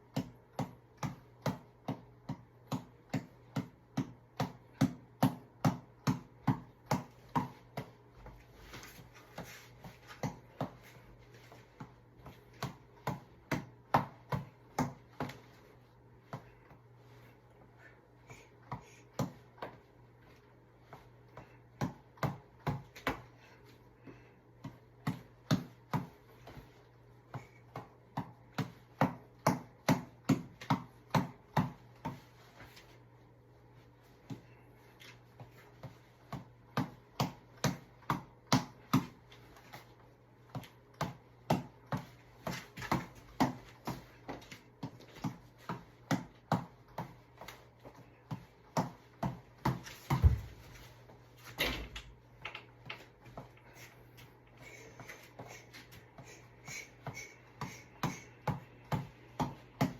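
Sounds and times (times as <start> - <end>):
reflex ball punches: 0.0 - 8.1, 11.8 - 15.6, 20.9 - 23.4, 24.5 - 32.2, 35.4 - 50.6, 56.0 - 59.9.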